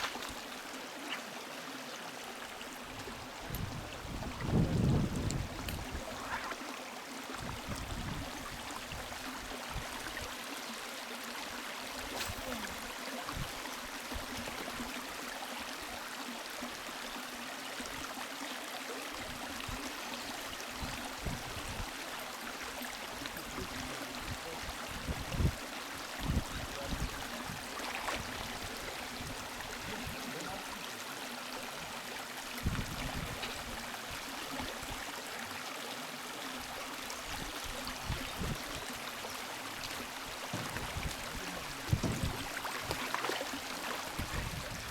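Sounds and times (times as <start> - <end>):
river water rushing: 0.0 - 4.9, 33.2 - 44.9.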